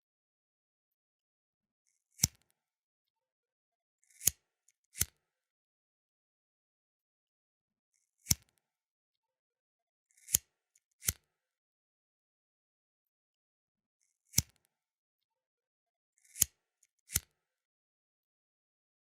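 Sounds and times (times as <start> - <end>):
lighter flint wheel scraping: 4.1 - 4.4, 10.2 - 11.2, 16.2 - 17.3.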